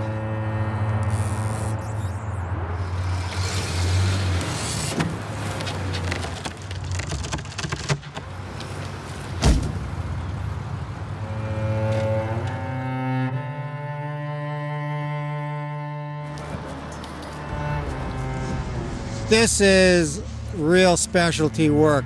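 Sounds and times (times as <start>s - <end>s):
sharp cracks and knocks: 4.9s - 9.8s
heavy machinery engine running: 16.2s - 21.7s.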